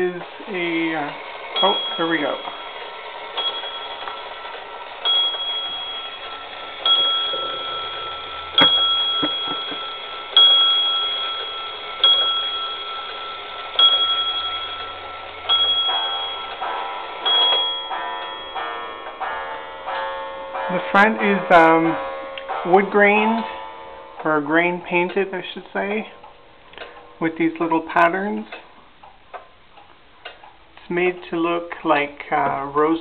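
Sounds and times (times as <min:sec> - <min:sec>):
clock bell striking: 0:00.0 - 0:28.7
mix of ringing tones: 0:01.5 - 0:18.8.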